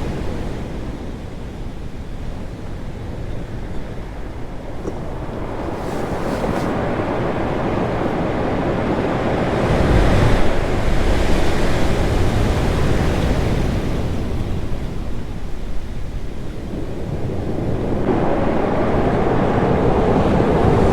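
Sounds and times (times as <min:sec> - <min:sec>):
ocean waves breaking on rocks: 0:00.0 - 0:15.2.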